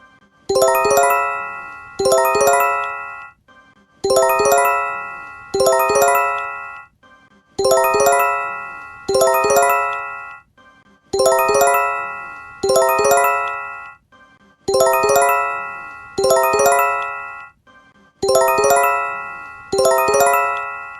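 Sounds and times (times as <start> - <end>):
bell-like alert chime: 0.5 - 3.3, 4.1 - 6.9, 7.6 - 10.4, 11.2 - 14.0, 14.7 - 17.5, 18.2 - 20.9.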